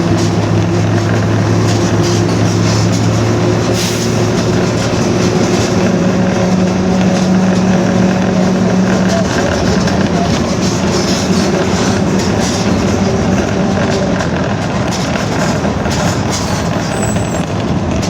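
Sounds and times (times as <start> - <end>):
bus diesel engine running: 0.0 - 18.0
droning differential: 0.0 - 18.0
road and body noise: 0.0 - 18.0.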